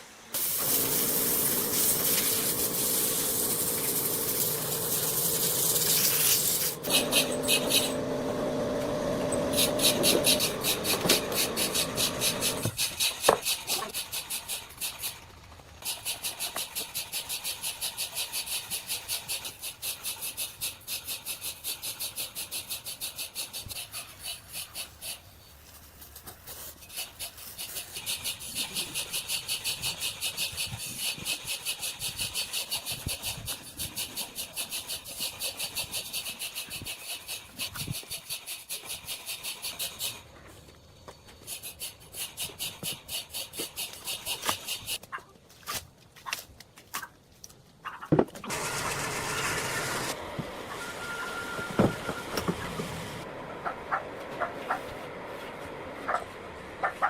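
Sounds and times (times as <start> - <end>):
woodworking machine noise: 0.3 - 13.9, 48.4 - 57.0
back-and-forth scraping strokes: 0.4 - 45.8.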